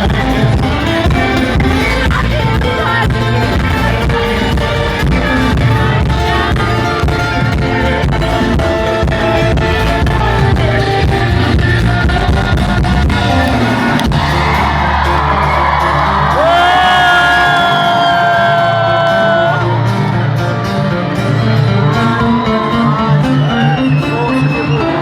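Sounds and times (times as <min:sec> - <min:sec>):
person singing: 0:00.0 - 0:14.8, 0:16.4 - 0:19.8
loud music with guitar: 0:00.0 - 0:25.0.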